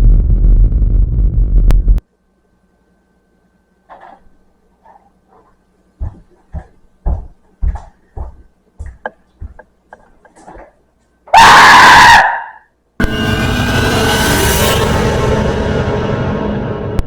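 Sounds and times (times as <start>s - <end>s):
loud scream of fright: 11.3s - 12.7s.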